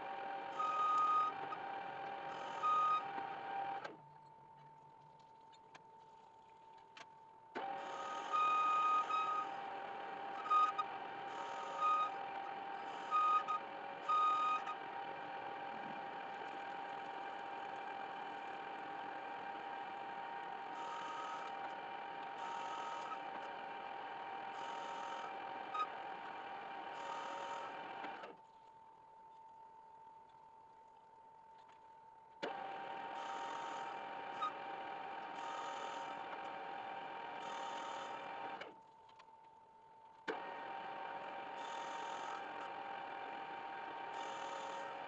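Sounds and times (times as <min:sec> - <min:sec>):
electric workshop machine running: 0:07.6 - 0:28.3, 0:32.5 - 0:38.7, 0:40.3 - 0:45.0.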